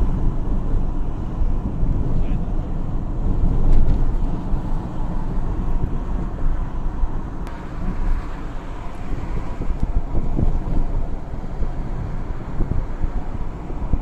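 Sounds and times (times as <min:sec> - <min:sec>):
wind buffeting microphone: 0:00.0 - 0:14.0.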